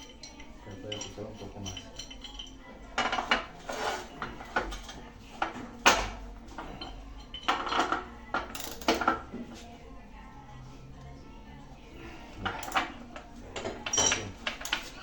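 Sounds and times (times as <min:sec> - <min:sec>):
wrench clinking on metal: 0:00.0 - 0:03.4, 0:06.6 - 0:09.2, 0:12.4 - 0:12.9, 0:13.6 - 0:14.9.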